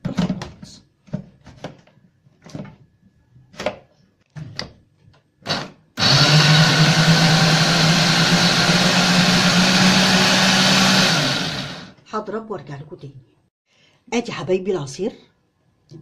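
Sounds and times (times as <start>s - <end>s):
electric blender whirring: 5.5s - 12.0s.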